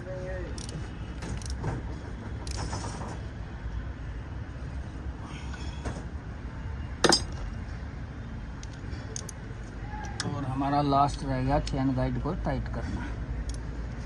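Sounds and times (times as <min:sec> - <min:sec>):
sharp metallic clink: 0:07.0 - 0:07.4.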